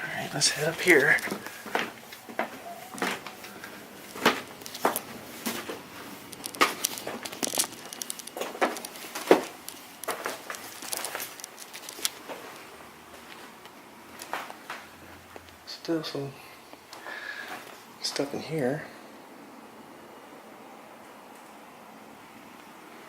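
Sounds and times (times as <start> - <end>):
crunching footsteps: 0.3 - 15.7.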